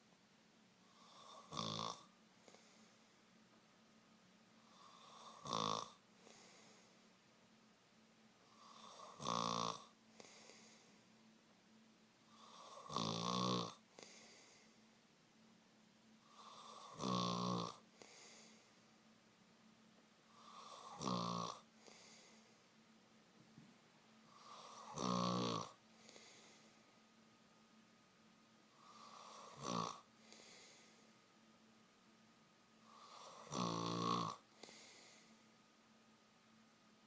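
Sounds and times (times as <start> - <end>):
man snoring: 0.9 - 2.8, 4.6 - 6.9, 8.5 - 10.9, 12.3 - 14.6, 16.2 - 18.6, 20.3 - 22.3, 24.3 - 26.6, 28.7 - 31.0, 32.8 - 35.3
soft breath: 2.3 - 3.4, 6.1 - 7.3, 10.0 - 11.3, 13.9 - 15.0, 17.9 - 19.0, 21.7 - 22.8, 25.8 - 27.1, 28.7 - 31.4, 34.5 - 35.6.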